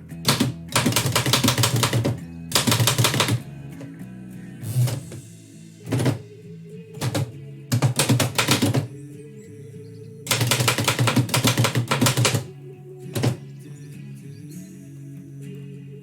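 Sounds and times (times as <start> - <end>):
background music: 0.0 - 16.0
typewriter typing: 0.1 - 3.4, 5.9 - 6.2, 7.0 - 8.9, 10.3 - 12.5, 13.2 - 13.4.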